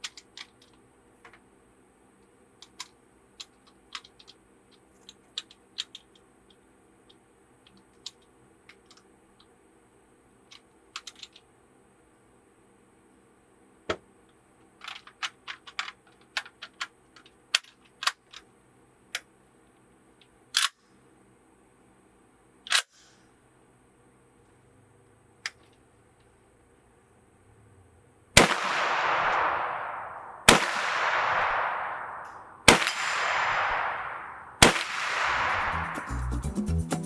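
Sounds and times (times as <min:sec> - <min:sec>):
faint steady hum: 0:00.0 - 0:36.3
sharp mechanical clicks and snaps: 0:02.6 - 0:06.2, 0:20.2 - 0:20.8, 0:22.7 - 0:23.2.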